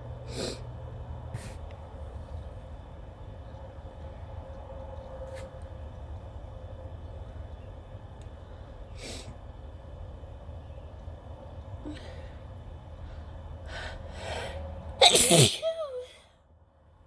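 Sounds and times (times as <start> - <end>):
low background rumble: 0.0 - 17.0
person sniffing: 1.4 - 1.6, 15.0 - 15.7.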